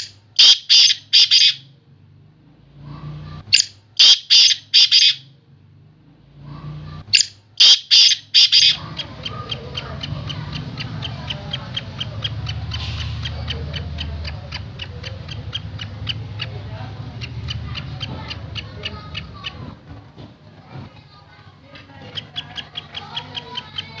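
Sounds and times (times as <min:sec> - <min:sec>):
francolin calling: 0:00.0 - 0:01.7, 0:03.5 - 0:05.3, 0:07.1 - 0:19.6, 0:21.6 - 0:24.0.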